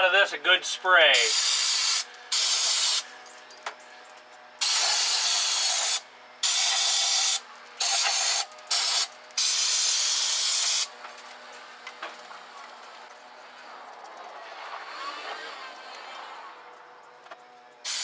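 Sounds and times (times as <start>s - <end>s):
aerosol can spraying: 1.2s - 3.0s, 4.6s - 10.9s.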